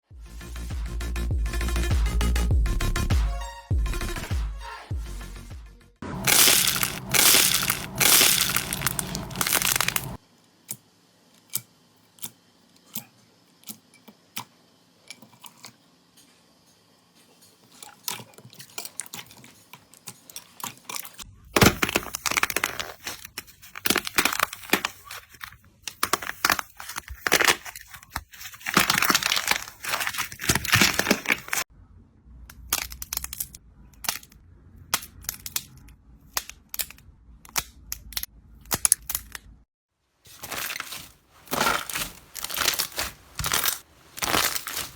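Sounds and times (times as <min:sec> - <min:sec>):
slime crackling and popping: 0:06.2 - 0:10.2, 0:40.4 - 0:44.9.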